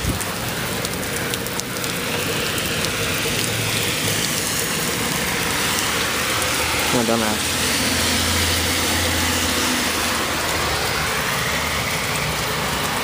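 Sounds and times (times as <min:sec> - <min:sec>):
steady rain falling: 0:00.0 - 0:13.0
drops ticking close: 0:00.2 - 0:06.9.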